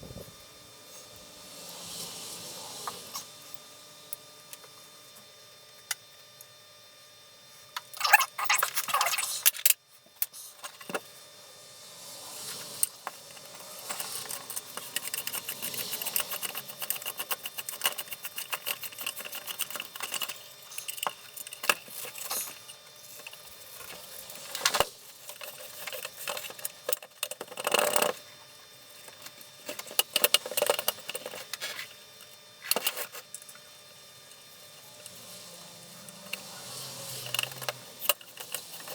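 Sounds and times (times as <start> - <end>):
small parts clicking and scraping: 7.8 - 11.1, 12.0 - 38.9.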